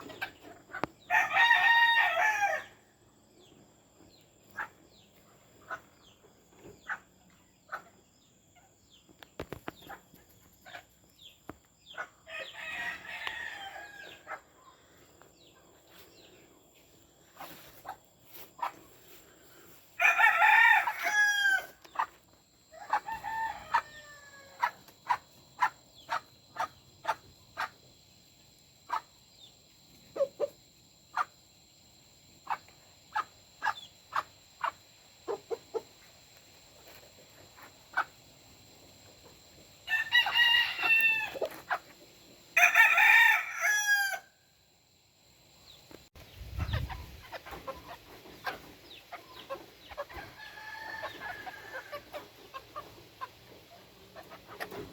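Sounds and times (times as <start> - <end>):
chickens clucking: 0.0 - 1.1, 3.4 - 20.0, 20.8 - 27.9, 28.9 - 29.2, 29.9 - 31.4, 32.4 - 36.1, 36.7 - 42.3, 45.9 - 54.9
roosters crowing: 1.0 - 2.9, 12.2 - 14.6, 19.1 - 22.1, 22.7 - 24.8, 39.8 - 41.9, 42.6 - 44.4, 49.4 - 54.9.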